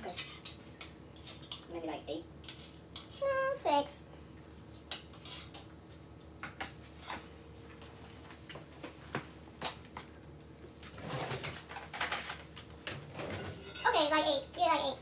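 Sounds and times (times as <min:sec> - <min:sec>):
dishes and utensils clinking: 0:13.2 - 0:14.4.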